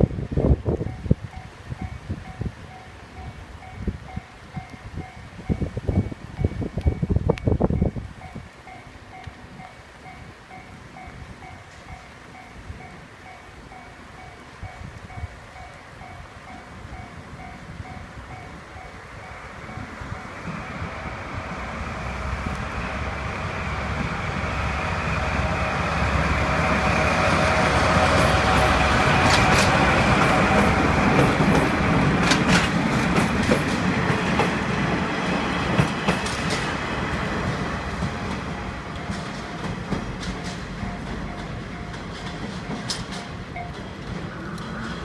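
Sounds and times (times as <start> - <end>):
diesel locomotive engine rumble: 0.0 - 45.0
wheels clacking over rail joints: 21.7 - 45.0.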